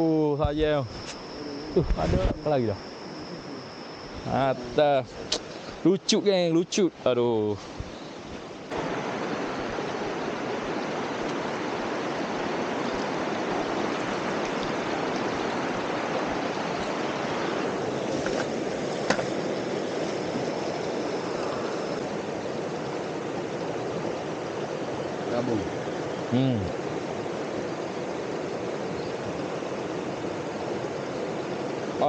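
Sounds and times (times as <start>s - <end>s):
waterfall rushing: 8.7s - 25.9s.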